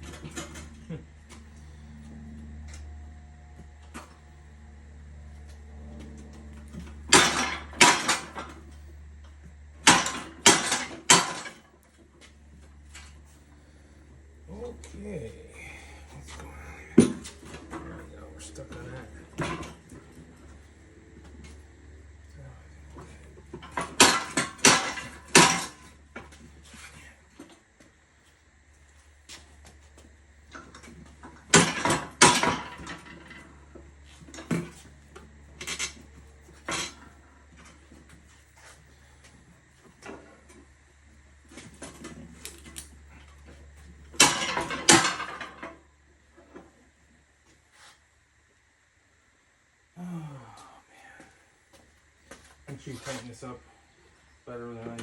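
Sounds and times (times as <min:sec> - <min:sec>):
steel tools clanking on wheel rim: 0:23.5 - 0:26.0.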